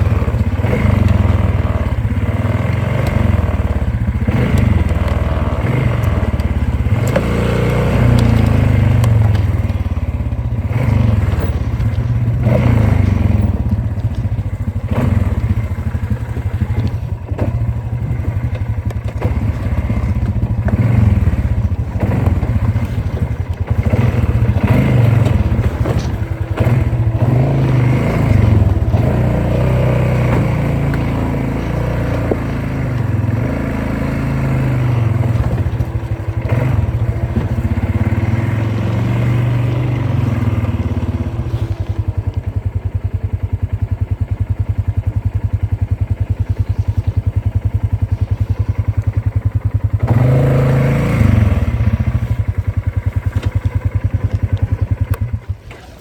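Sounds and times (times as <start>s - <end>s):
knocks and clattering: 0.0s - 41.4s
off-road vehicle engine revving: 0.0s - 56.0s.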